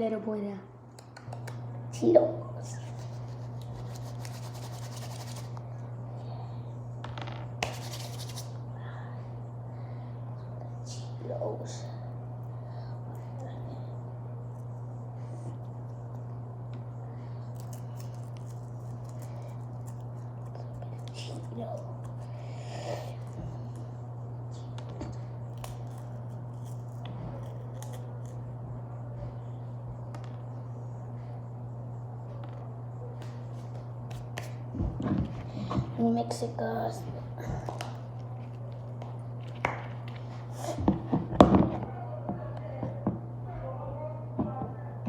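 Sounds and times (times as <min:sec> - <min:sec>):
low electrical hum: 0:00.0 - 0:45.0.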